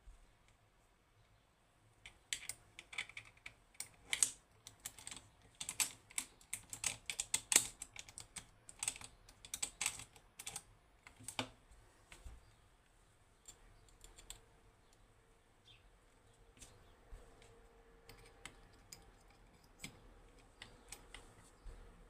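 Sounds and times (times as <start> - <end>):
lock picks clicking in a lock: 2.0 - 11.4, 13.4 - 14.4, 18.1 - 21.2.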